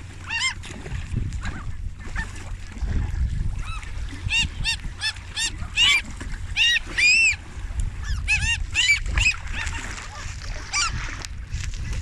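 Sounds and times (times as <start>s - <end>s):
geese honking: 4.3s - 7.4s.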